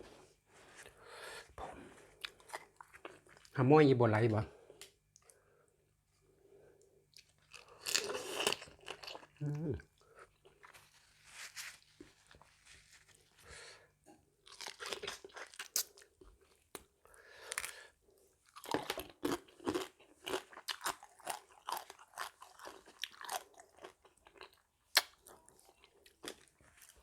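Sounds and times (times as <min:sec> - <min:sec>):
chewing and crunching food: 0:01.9 - 0:03.6, 0:06.8 - 0:13.6, 0:14.4 - 0:27.0.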